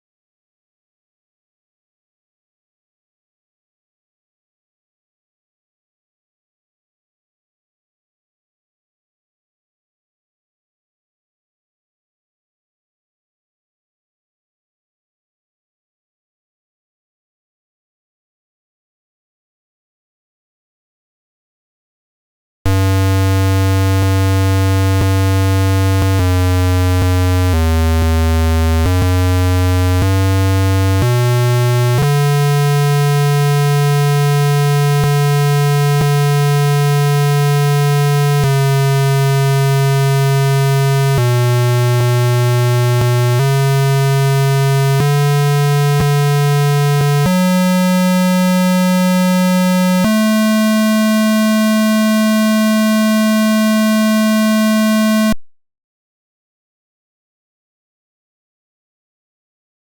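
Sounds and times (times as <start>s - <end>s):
harsh electronic buzz: 22.7s - 55.4s.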